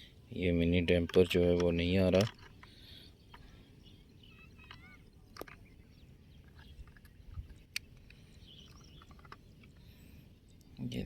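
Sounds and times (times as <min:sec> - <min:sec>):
plastic toy clicks and taps: 0:01.1 - 0:02.7
faint chirps: 0:02.6 - 0:07.1.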